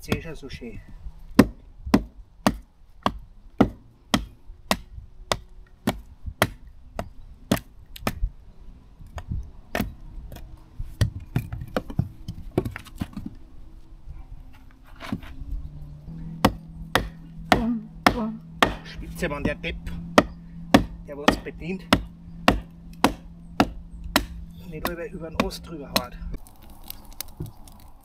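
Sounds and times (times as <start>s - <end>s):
axe chopping wood: 1.3s - 8.2s, 9.1s - 13.4s, 16.4s - 26.2s.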